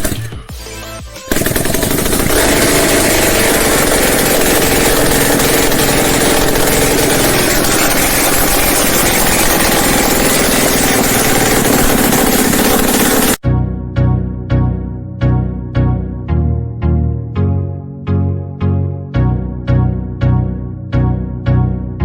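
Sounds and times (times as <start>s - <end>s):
background music: 0.0s - 1.9s, 13.4s - 22.0s
rapid mechanical rattling: 1.3s - 13.4s.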